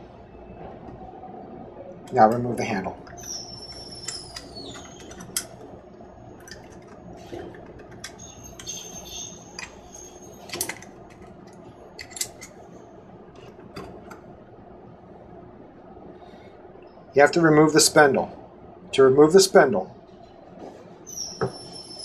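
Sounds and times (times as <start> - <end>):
metal lock parts clicking: 3.1 - 5.6, 6.4 - 12.6
metal squeak: 3.1 - 5.6, 7.2 - 10.9, 21.1 - 22.0.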